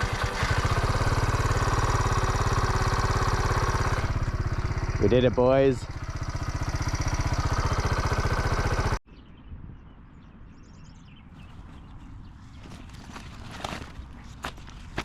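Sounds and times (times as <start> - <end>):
vehicle engine idling: 0.0 - 9.0.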